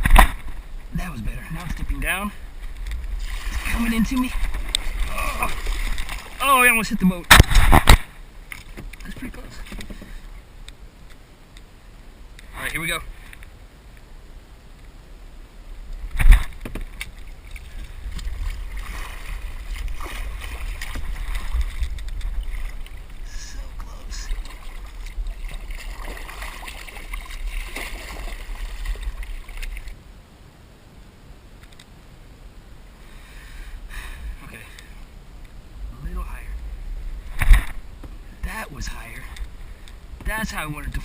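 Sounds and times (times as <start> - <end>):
water lapping against kayak hull: 0.0 - 10.6, 16.0 - 30.0.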